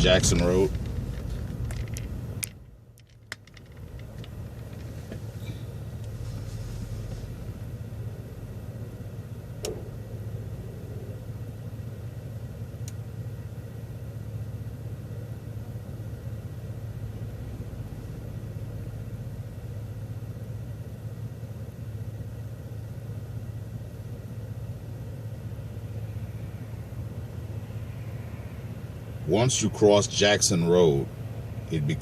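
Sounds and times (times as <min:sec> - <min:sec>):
sharp clicks and rattles: 0:00.0 - 0:06.2
bus engine hum and road noise: 0:00.0 - 0:32.0.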